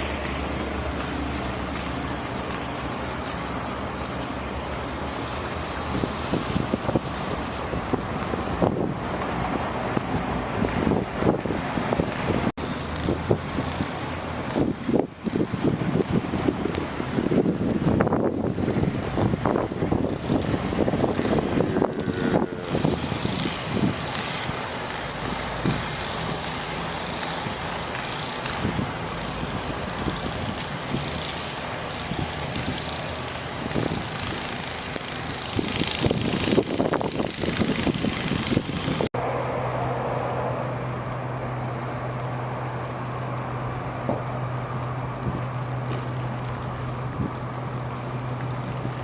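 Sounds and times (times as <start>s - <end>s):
road traffic passing: 0.0s - 49.0s
wind noise on microphone: 5.7s - 24.8s, 28.5s - 31.3s, 32.1s - 39.4s, 46.9s - 47.5s.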